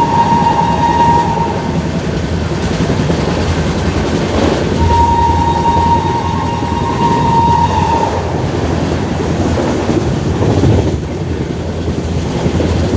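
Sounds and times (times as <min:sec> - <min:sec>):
shrill locomotive horn: 0:00.0 - 0:03.5, 0:04.7 - 0:10.0
passing train rumble: 0:00.0 - 0:12.9
wheels clattering over rail joints: 0:00.0 - 0:12.9.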